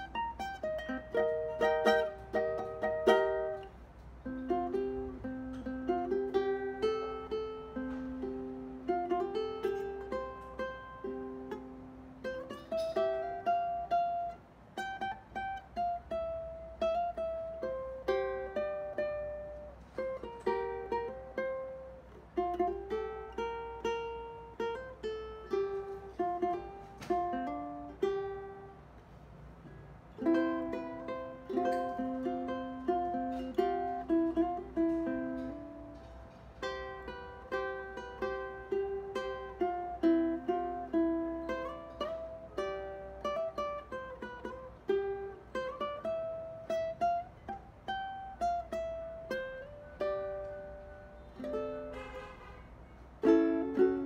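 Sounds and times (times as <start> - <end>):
ukulele playing melody: 0.0 - 54.0.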